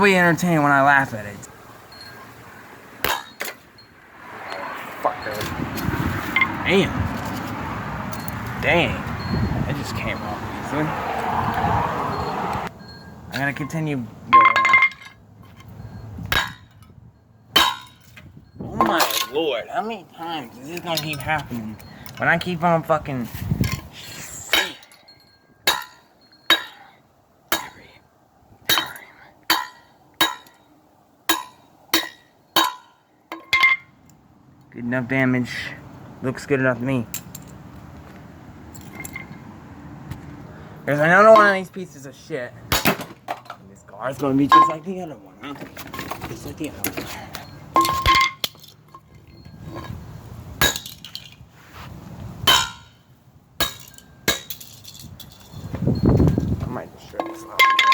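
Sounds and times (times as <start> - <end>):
metallic clinking impacts: 3.0 - 4.6, 8.1 - 10.3, 12.8 - 22.6, 23.5 - 28.0, 28.6 - 34.1, 37.1 - 39.5, 40.9 - 41.9, 42.6 - 51.5, 52.4 - 57.9.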